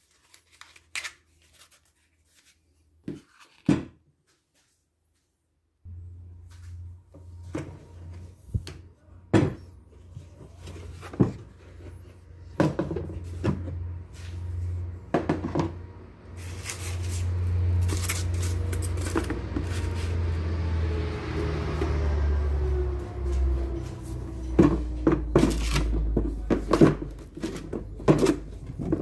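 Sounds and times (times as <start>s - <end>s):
low hum: 5.9s - 11.0s
objects knocking and clicking: 24.5s - 29.0s.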